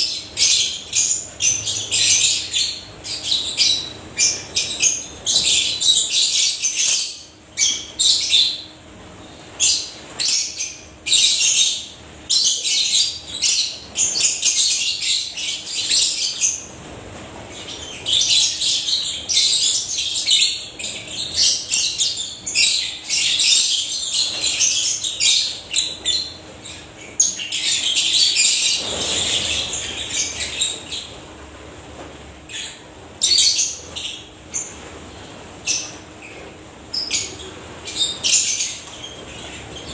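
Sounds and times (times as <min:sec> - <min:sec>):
lovebirds chirping shrilly: 0:17.5 - 0:31.2.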